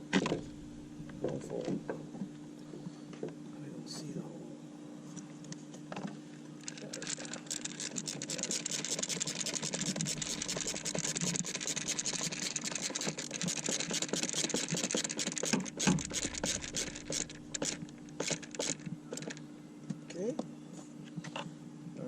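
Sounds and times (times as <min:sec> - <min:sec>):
steady low hum: 0:00.0 - 0:05.0, 0:06.3 - 0:21.2
ratcheting hand tool clicks: 0:06.9 - 0:19.4.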